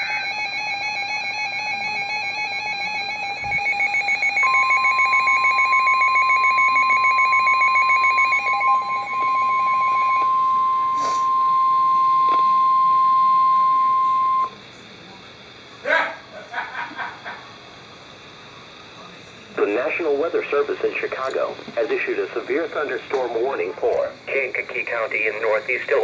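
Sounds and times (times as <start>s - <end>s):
warbling electronic tune: 0.0s - 11.1s.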